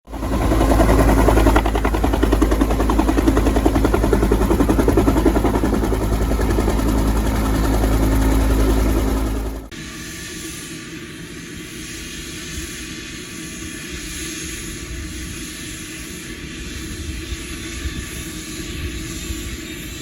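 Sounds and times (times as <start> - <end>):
helicopter rotor beat: 0.1 - 9.7
turbine hum: 0.1 - 9.7.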